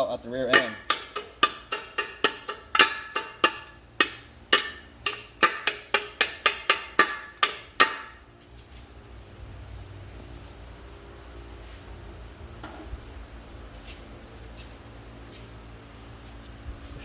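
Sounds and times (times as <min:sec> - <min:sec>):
hammer tapping metal punch: 0:00.5 - 0:08.2.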